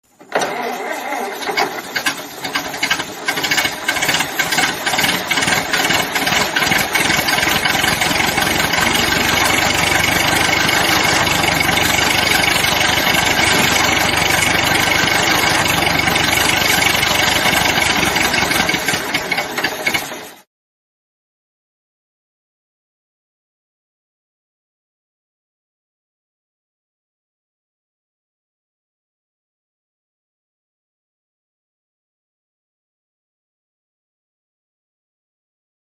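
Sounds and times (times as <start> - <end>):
old car engine starting: 0.1 - 20.5.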